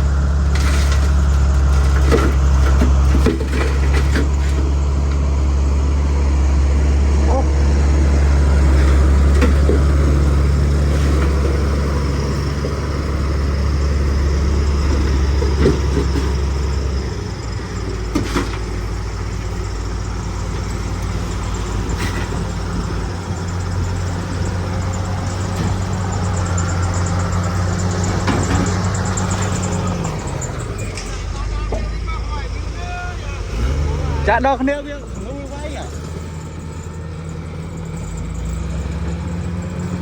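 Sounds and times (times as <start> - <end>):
bulldozer diesel engine running: 0.0 - 40.0
metal clanks: 0.4 - 5.2, 14.6 - 19.4.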